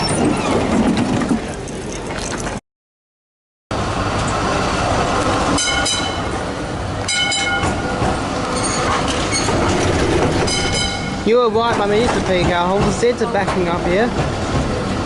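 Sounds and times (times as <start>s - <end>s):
trams rumbling: 0.0s - 2.6s, 3.7s - 15.0s
traffic noise: 3.7s - 15.0s
high-pitched tram bell ringing: 5.5s - 6.4s, 7.0s - 7.8s, 10.5s - 11.2s.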